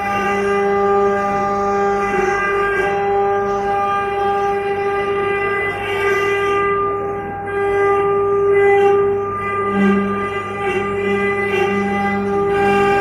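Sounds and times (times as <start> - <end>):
engraving machine whining: 0.0 - 13.0.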